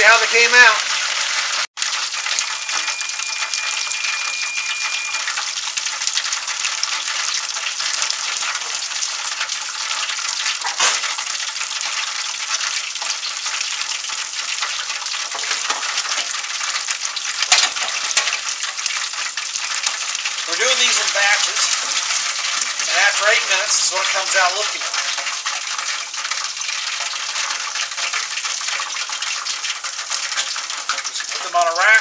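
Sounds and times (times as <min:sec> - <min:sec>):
deep-frying sizzle: 0:00.0 - 0:32.0
oil pop: 0:10.5 - 0:11.3, 0:17.4 - 0:18.5.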